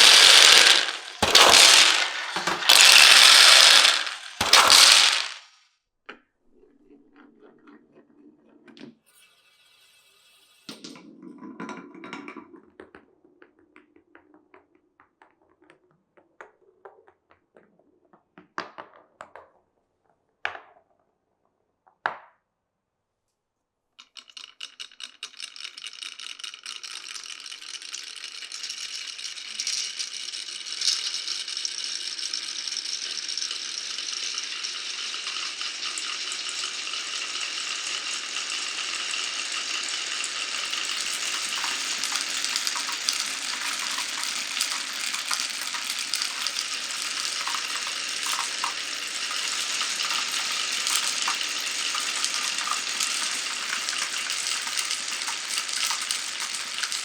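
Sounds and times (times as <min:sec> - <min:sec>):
marbles clicking and knocking: 0:00.0 - 0:05.5, 0:24.0 - 0:57.0
marbles rolling on wooden track: 0:00.0 - 0:05.6, 0:06.6 - 0:17.8, 0:24.0 - 0:57.0
rattle of many marbles: 0:00.0 - 0:05.6, 0:24.0 - 0:57.0.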